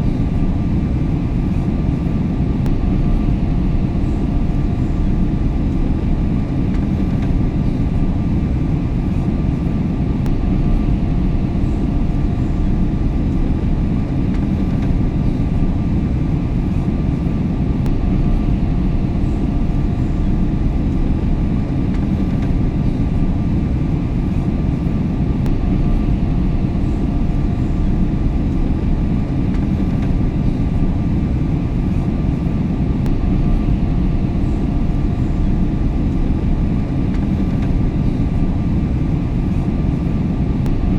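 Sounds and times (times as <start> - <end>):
airplane engine rumble: 0.0 - 40.9
faint hum: 0.0 - 40.9.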